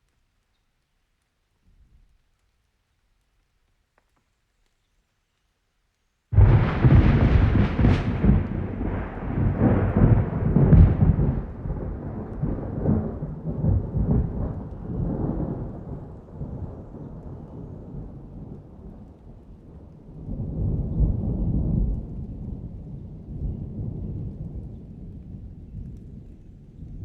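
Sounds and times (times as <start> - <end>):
thunder rumbling: 6.3 - 27.0.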